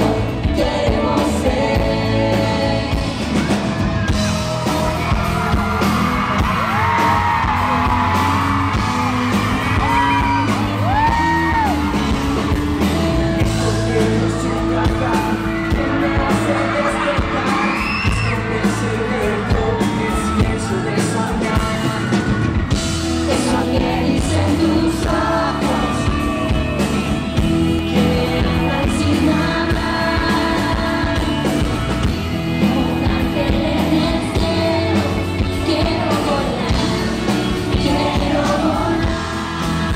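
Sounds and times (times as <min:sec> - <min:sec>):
person singing: 0:00.0 - 0:03.6, 0:13.3 - 0:39.9
live pop-rock band playing: 0:00.0 - 0:39.9
audience yelling and whooping: 0:00.1 - 0:39.9.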